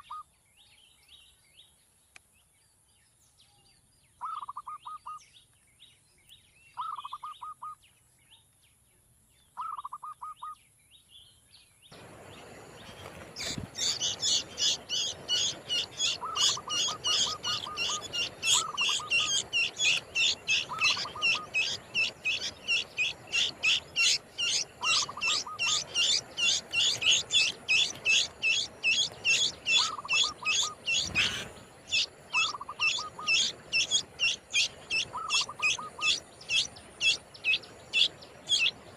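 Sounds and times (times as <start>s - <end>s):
birds trilling: 12.0s - 38.9s
rapid high bird chirping: 12.2s - 38.9s.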